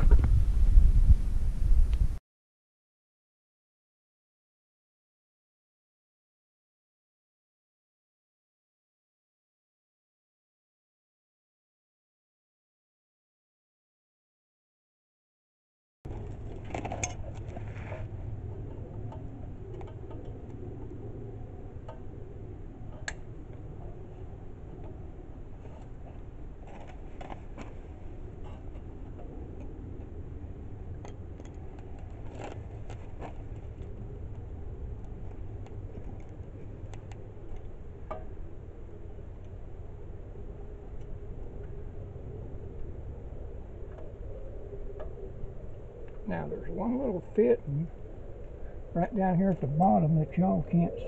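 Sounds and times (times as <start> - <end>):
steady low rumble: 0.0 - 2.2, 16.1 - 51.0
steady low hum: 16.1 - 51.0.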